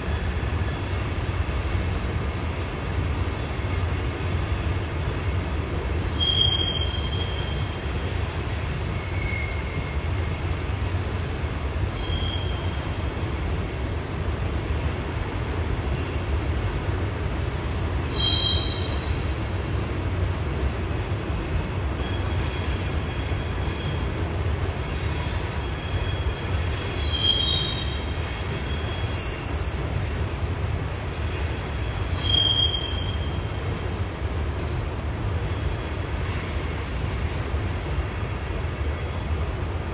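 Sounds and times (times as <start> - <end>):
train cars rumbling past: 0.0 - 39.9
high-pitched wheel squeals: 6.1 - 12.8, 28.9 - 30.1, 32.2 - 33.4.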